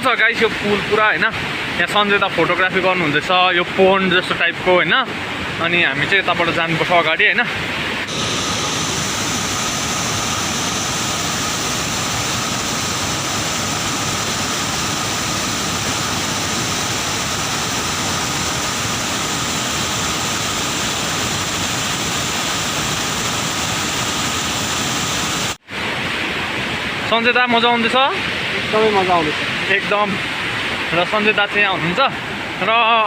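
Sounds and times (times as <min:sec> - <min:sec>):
waterfall roar: 0:00.1 - 0:33.0.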